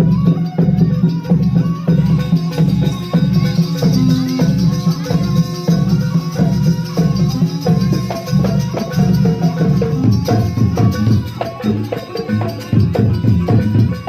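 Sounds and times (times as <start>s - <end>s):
drums: 0.0s - 14.0s
pitched percussion: 0.0s - 14.0s.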